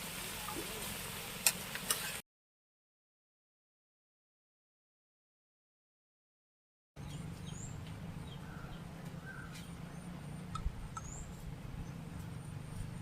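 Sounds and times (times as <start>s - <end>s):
small birds chirping: 7.0s - 13.0s.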